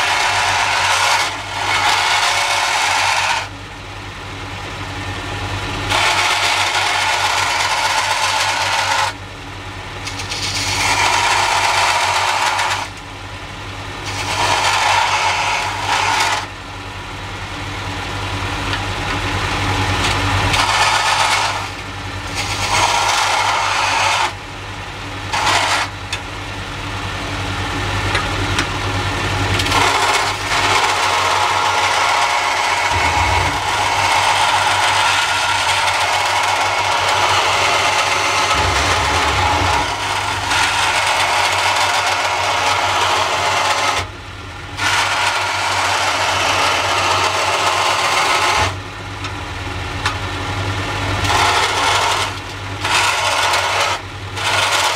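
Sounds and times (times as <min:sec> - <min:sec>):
band saw cutting steel: 0:00.0 - 0:03.6, 0:05.8 - 0:09.2, 0:10.0 - 0:13.0, 0:14.0 - 0:16.6, 0:20.0 - 0:24.4, 0:25.3 - 0:26.0, 0:29.6 - 0:44.1, 0:44.8 - 0:48.8, 0:51.2 - 0:54.9
motor hum: 0:00.0 - 0:54.9.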